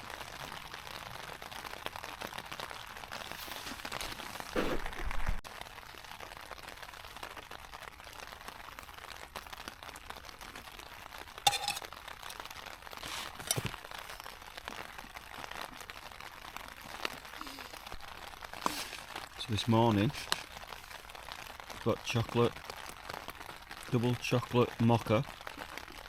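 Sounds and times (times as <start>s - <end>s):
rain hissing on tent: 0.0s - 26.0s
packets crinkling and gear clinking: 11.5s - 14.4s, 18.5s - 20.6s.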